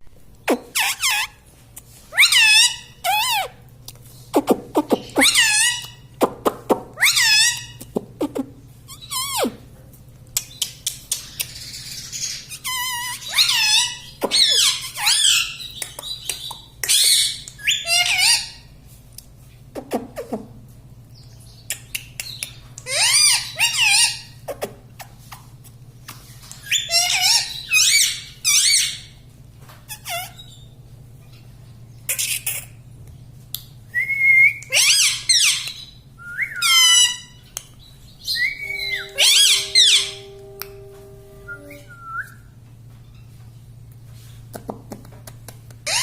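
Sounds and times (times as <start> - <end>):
parakeet squawking and chattering: 0.5 - 1.4, 2.1 - 3.6, 4.4 - 9.6, 10.5 - 18.7, 21.5 - 24.7, 26.6 - 29.1, 34.7 - 36.0, 36.6 - 37.6, 38.2 - 40.8.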